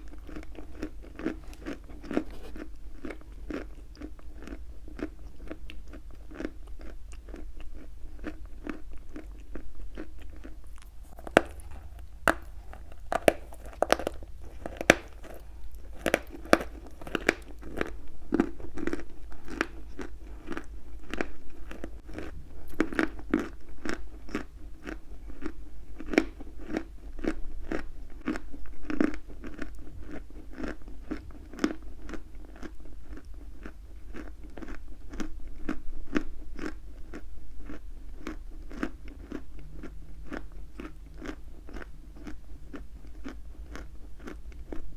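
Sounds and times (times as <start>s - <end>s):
chewing chalk crunching: 0.0s - 35.3s
sharp biting snaps: 10.7s - 17.6s.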